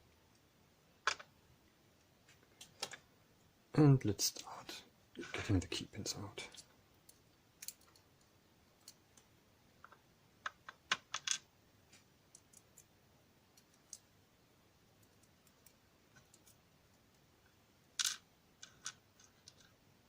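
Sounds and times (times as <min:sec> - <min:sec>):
small metallic clicks and taps: 0:07.1 - 0:12.9.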